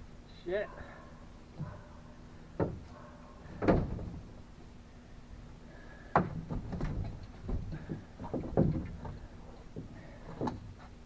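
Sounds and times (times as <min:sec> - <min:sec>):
knocks and clunks: 0:06.1 - 0:10.7.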